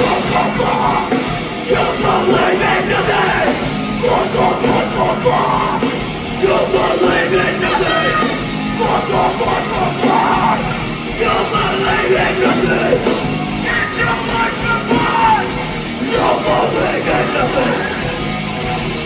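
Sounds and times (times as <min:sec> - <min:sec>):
heavy rock band playing: 0:00.0 - 0:19.0
person yelling vocals: 0:13.6 - 0:18.0.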